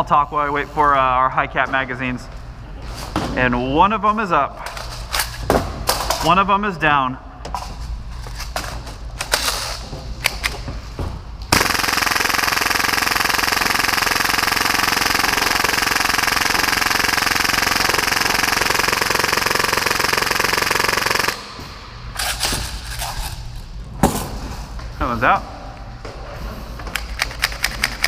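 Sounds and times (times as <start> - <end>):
airsoft pistol full-auto burst: 11.5 - 21.5.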